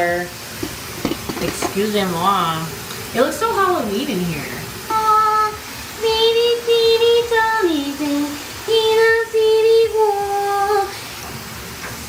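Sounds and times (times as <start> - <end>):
woman singing in a high voice: 1.8 - 11.0.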